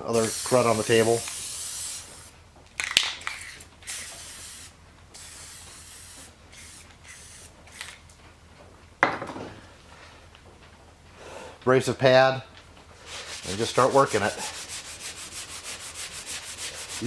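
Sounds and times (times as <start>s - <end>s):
aerosol can spraying: 0.0s - 2.3s, 3.8s - 7.9s.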